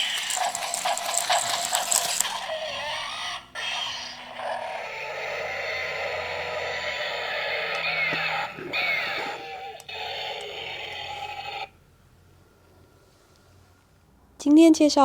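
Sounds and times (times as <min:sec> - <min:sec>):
toy electric motor whirring: 0:00.0 - 0:11.7
toy gears ratcheting clicks: 0:00.0 - 0:11.7.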